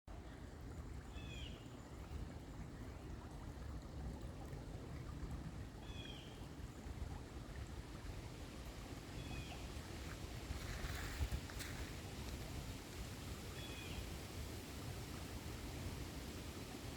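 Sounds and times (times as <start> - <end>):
rushing water: 0.1 - 16.9.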